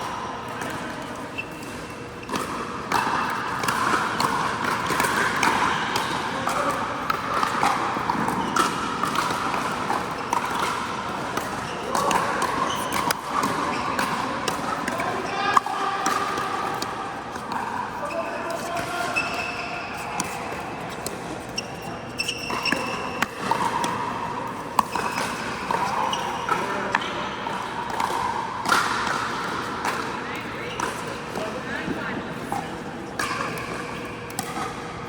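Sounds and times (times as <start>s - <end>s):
paddles hitting plastic ball: 2.3s - 19.4s.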